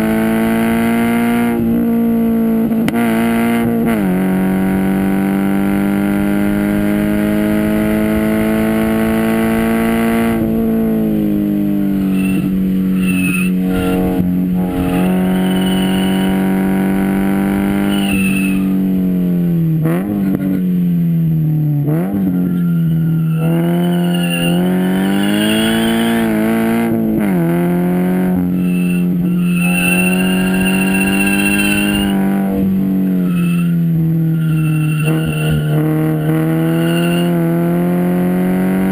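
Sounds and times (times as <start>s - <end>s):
loud car exhaust note: 0.0s - 38.9s
high tyre squeal: 11.6s - 18.8s, 22.0s - 26.9s, 28.4s - 37.6s.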